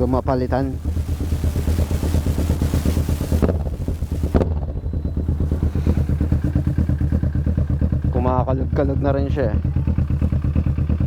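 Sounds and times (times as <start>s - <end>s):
hissy exhaust burst: 0.0s - 8.1s
motorcycle engine running: 0.0s - 11.0s.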